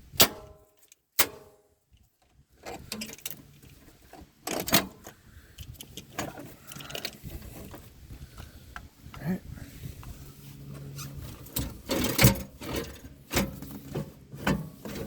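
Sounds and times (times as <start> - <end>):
intake parts handled: 2.0 - 8.0, 10.8 - 15.0
metal clips clicking and rattling: 4.5 - 7.3.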